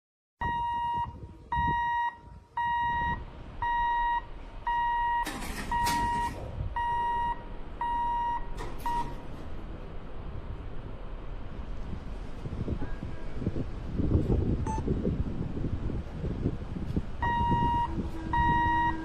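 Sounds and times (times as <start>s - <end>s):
electronic warning beeps: 0.4s - 9.2s, 14.6s - 14.8s, 17.2s - 19.0s.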